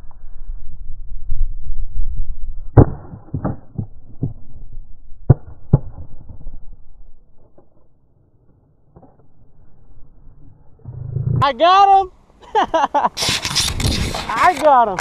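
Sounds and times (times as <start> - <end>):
wind rumble on microphone: 0.0 - 7.2, 13.3 - 14.6.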